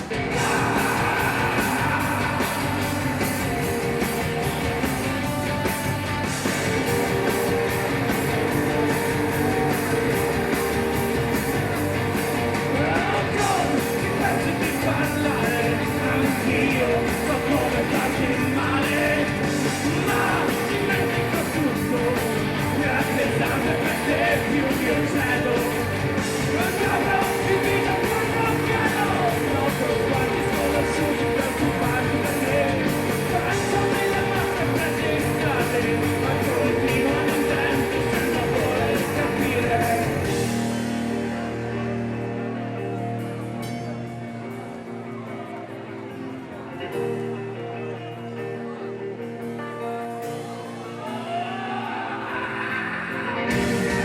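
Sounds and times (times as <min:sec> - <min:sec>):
bass guitar: 0:00.0 - 0:54.0
distorted electric guitars: 0:00.0 - 0:54.0
drums: 0:00.0 - 0:54.0
person shouting singing: 0:00.1 - 0:03.8, 0:12.7 - 0:40.4, 0:50.8 - 0:54.0.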